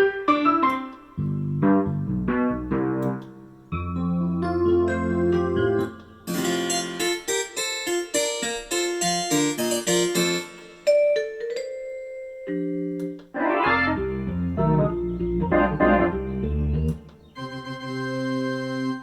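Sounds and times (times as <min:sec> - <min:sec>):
digital piano playing: 0:00.0 - 0:19.0.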